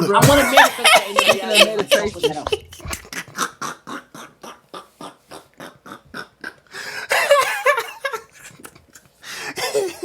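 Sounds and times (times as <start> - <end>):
person's voice in choppy bursts: 0.0 - 2.9.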